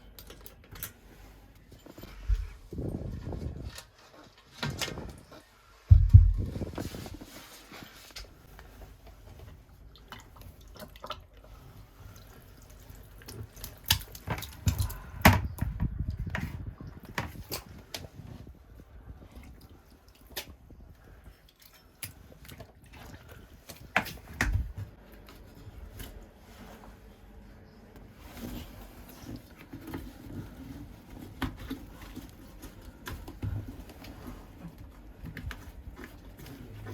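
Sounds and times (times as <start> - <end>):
heavy thumps: 5.9 - 6.9
water dripping and splashing: 9.9 - 15.3.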